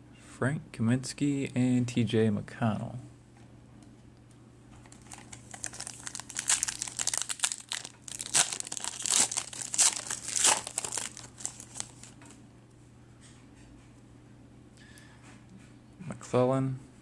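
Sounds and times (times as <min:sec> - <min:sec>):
plastic wrapper crinkling and tearing: 0:04.8 - 0:12.3.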